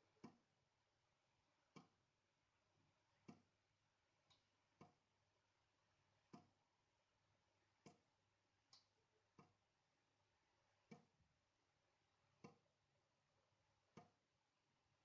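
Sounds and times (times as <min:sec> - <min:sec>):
water drops dripping: 0:06.3 - 0:06.6, 0:08.7 - 0:09.6.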